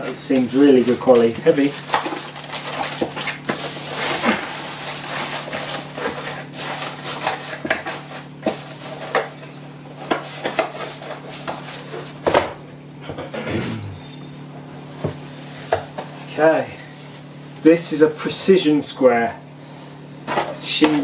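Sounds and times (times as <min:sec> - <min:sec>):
packaging rustling: 0:00.4 - 0:09.4.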